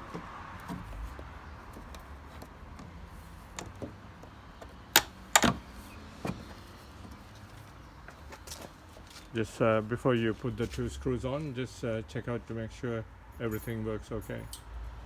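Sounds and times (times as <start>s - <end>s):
hard plastic clicks and knocks: 0.1s - 6.5s.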